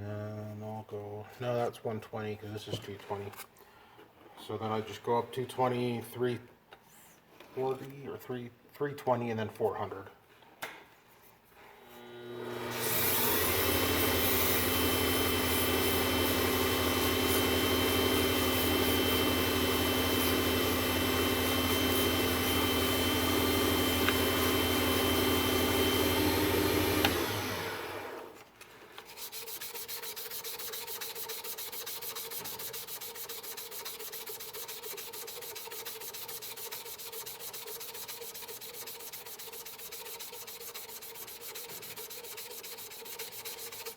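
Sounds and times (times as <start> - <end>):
lathe motor running: 12.1 - 28.3
sandpaper rubbing spinning blank: 14.0 - 27.7, 29.0 - 43.9.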